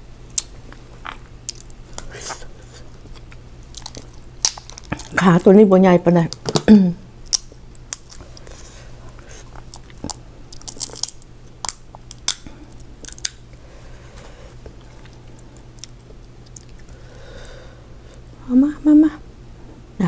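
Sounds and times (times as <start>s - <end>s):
chewing: 0.3s - 5.2s, 7.3s - 13.5s, 14.1s - 17.2s
crab shell cracking: 3.0s - 5.2s, 6.3s - 8.5s, 9.5s - 13.6s.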